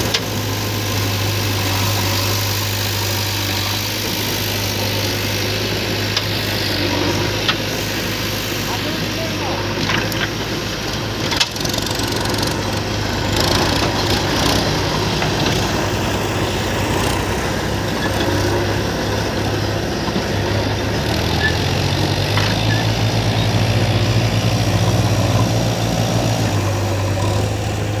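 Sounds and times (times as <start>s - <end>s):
diesel engine droning: 0.0s - 28.0s
sharp knocks and clatters: 22.3s - 22.8s.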